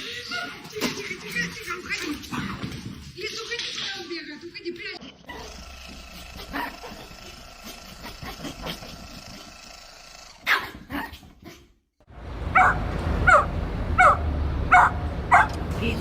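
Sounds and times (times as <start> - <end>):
dog barking: 10.4 - 11.2, 12.5 - 15.6.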